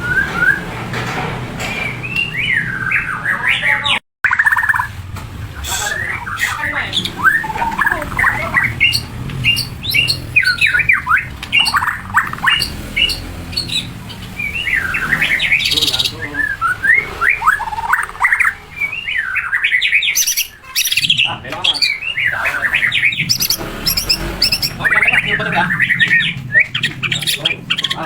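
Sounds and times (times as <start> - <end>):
songbird singing whistled notes: 0.0 - 0.7, 1.7 - 4.9, 5.8 - 28.0.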